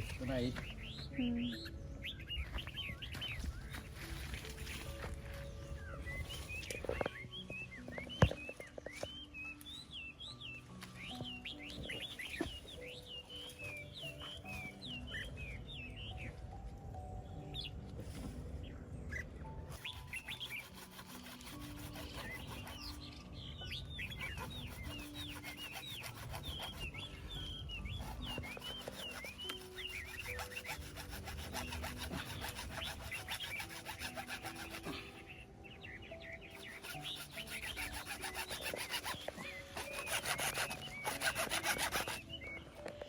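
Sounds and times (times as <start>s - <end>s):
birds chirping: 0.0s - 43.0s
soft background music: 0.0s - 43.0s
fast sawing strokes: 19.7s - 23.1s, 24.0s - 35.2s, 36.4s - 42.3s.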